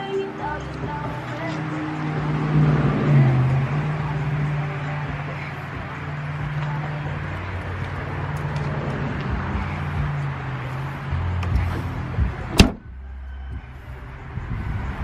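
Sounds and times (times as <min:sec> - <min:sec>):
sharp bang: 0:12.6 - 0:12.8.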